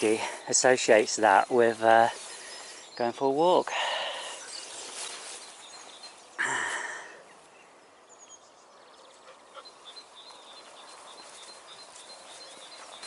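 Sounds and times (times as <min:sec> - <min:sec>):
soft birdsong with high chirps: 0:00.0 - 0:13.0.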